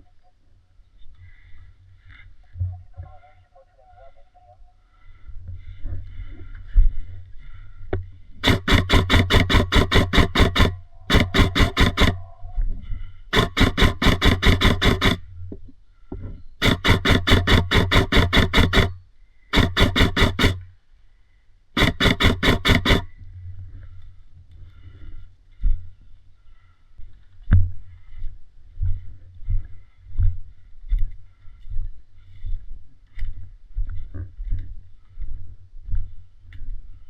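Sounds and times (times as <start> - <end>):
airsoft gun automatic fire: 8.4 - 12.2, 13.3 - 15.2, 16.6 - 20.6, 21.8 - 23.1.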